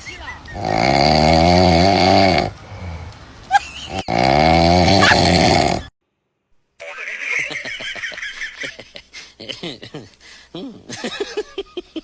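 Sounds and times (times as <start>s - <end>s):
monkey snoring: 0.5s - 3.1s, 3.9s - 5.9s.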